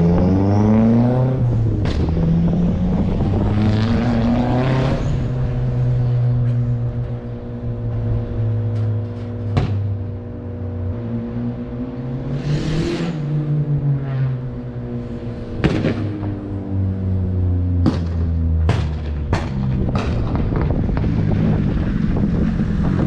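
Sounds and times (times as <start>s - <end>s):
car engine revving: 0.0s - 23.0s
engine sharp cracks: 15.6s - 16.4s, 17.8s - 21.8s.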